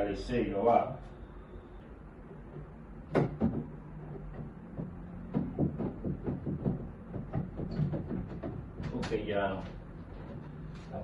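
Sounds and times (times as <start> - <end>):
knocks and rattling of washing machine parts: 2.2 - 10.7.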